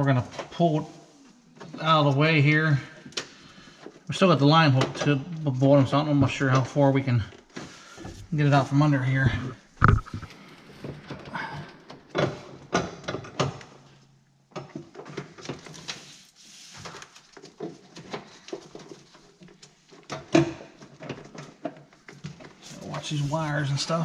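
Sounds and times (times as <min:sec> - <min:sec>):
clicks knocks and rustling: 0:09.8 - 0:11.2.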